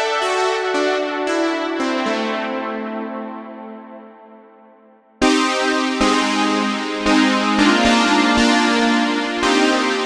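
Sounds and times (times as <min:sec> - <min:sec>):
synthesizer chords: 0:05.2 - 0:10.0.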